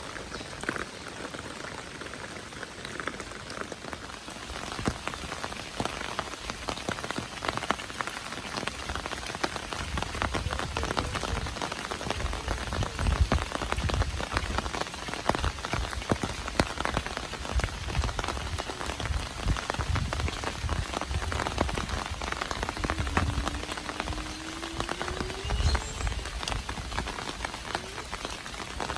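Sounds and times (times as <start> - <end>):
rain drops pattering: 0.0 - 28.9
low rumbling bursts: 19.1 - 27.8.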